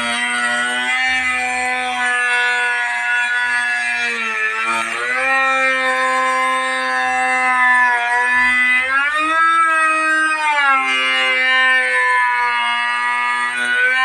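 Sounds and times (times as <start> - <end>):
woodworking router whining: 0.0 - 14.0.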